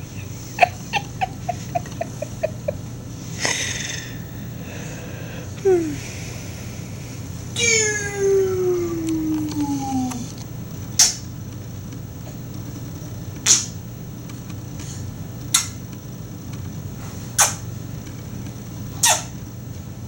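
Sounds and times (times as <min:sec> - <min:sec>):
drawn-out falling vocal sound: 0:03.2 - 0:10.4.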